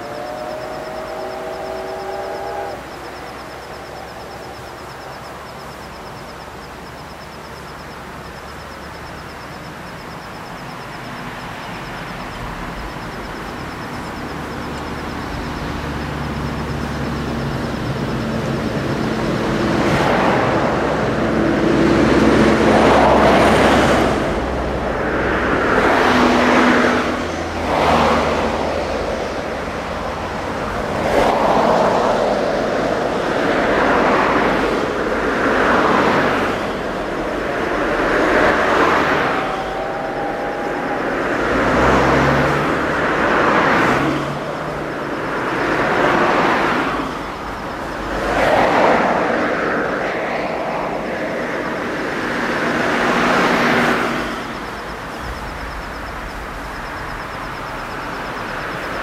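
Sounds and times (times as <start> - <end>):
steam locomotive whistle: 0.0 - 4.8, 37.7 - 43.5
train rumble: 0.0 - 59.0.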